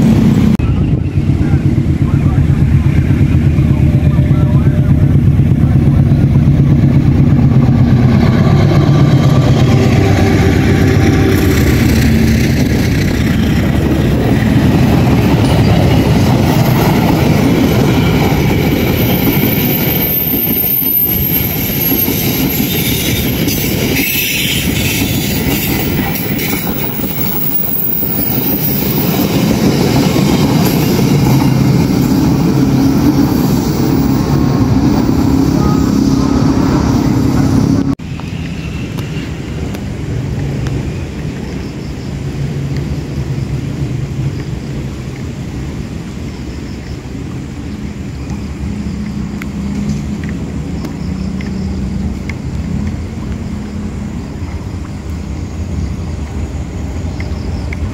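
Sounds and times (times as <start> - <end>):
locomotive engine hum: 0.0 - 57.9
train wheels rolling on rails: 0.0 - 57.9
high-pitched wheel squeal: 18.1 - 29.3.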